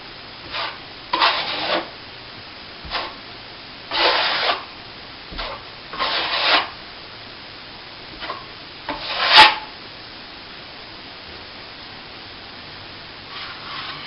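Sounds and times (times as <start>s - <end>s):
sanding plaster: 0.5s - 1.9s, 3.9s - 4.7s, 5.4s - 6.8s, 8.9s - 9.6s.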